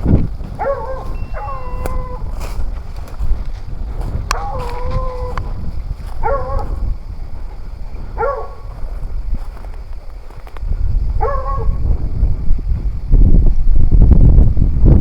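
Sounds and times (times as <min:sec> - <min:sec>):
steady low rumble: 0:00.0 - 0:15.0
dog barking: 0:00.5 - 0:02.5, 0:04.3 - 0:06.9, 0:08.1 - 0:08.8, 0:11.2 - 0:11.9.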